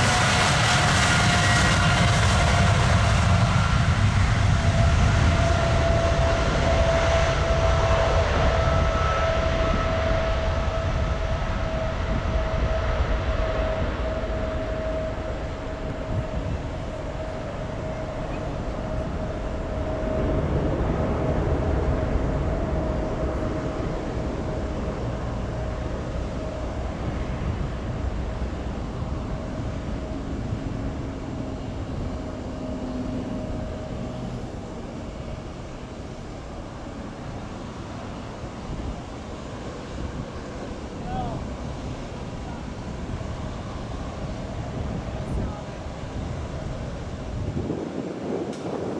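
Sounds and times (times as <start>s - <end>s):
jet engines at takeoff: 0.0s - 48.9s.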